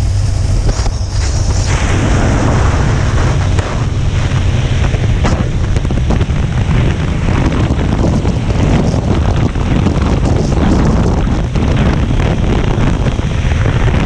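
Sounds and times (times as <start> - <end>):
low rumble: 0.0 - 14.0
wind buffeting microphone: 0.0 - 14.0.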